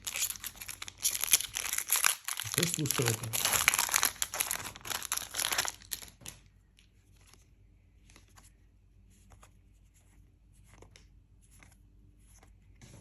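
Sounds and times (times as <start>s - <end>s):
wrapper crinkling: 0.0s - 6.3s.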